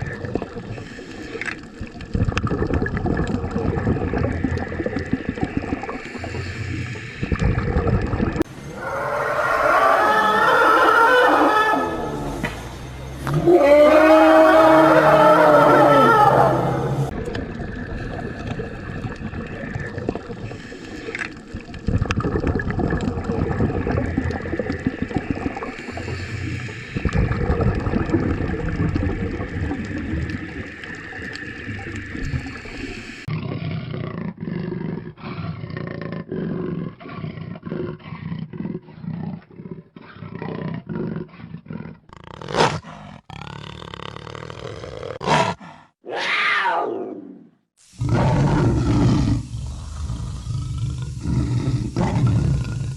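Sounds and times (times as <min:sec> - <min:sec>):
large animals roaring and growling: 0:08.6 - 0:17.2, 0:33.3 - 0:52.9.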